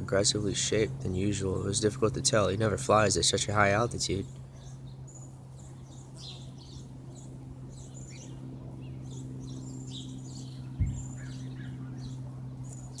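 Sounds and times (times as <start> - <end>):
songbirds chirping: 0.0 - 13.0
steady low hum: 0.0 - 13.0
sharp thump: 10.8 - 11.0.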